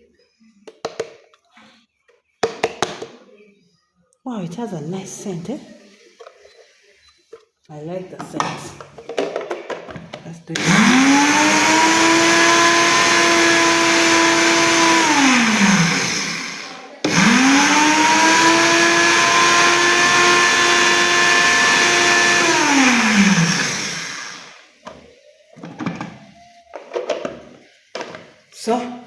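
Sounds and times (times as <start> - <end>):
electric grinder whining: 10.6 - 24.6.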